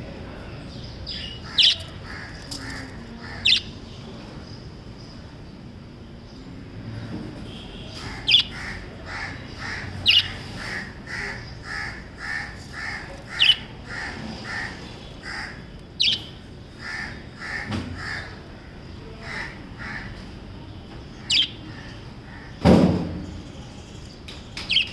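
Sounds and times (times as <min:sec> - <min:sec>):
parrots chirping: 0:01.1 - 0:04.0, 0:08.1 - 0:18.4, 0:21.2 - 0:22.4.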